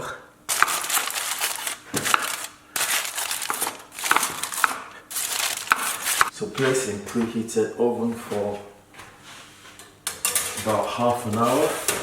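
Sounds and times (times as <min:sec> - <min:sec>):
aluminium foil crinkling: 0:00.5 - 0:06.3.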